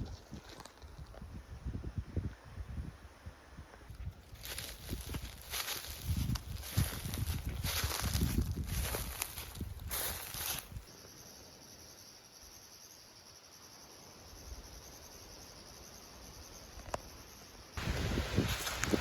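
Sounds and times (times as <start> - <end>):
rustling noise: 3.9 - 10.9, 17.8 - 19.0
insects chirring: 3.9 - 19.0.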